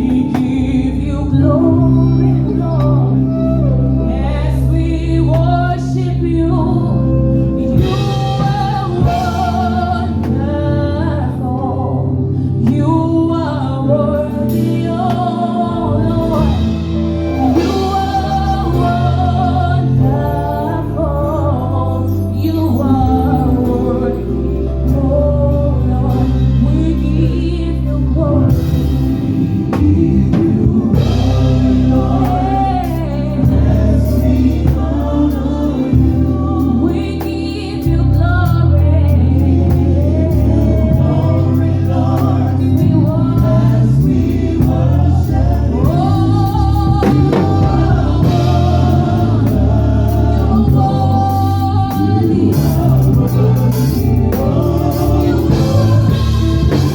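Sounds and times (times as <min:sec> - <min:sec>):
gospel singers with band: 0:00.0 - 0:56.9.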